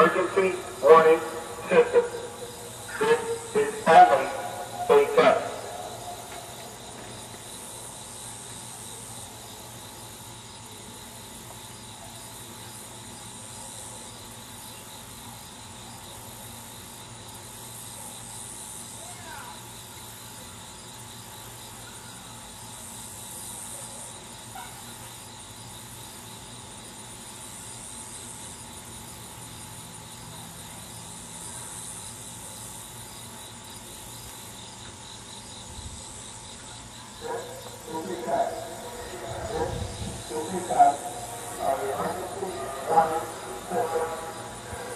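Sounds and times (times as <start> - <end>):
low steady hum: 0.0 - 7.4, 37.0 - 44.9
high insect buzz: 0.0 - 44.9
insects chirping and buzzing: 0.0 - 44.9.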